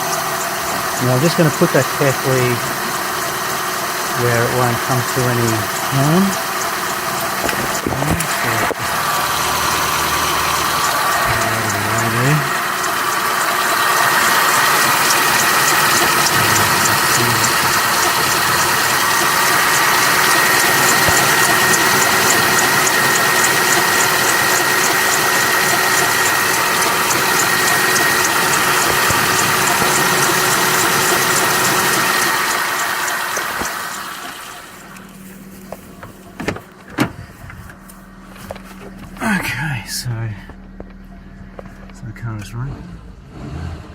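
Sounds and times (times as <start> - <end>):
fast ticking: 0.0 - 35.1
car engine running: 0.0 - 43.9.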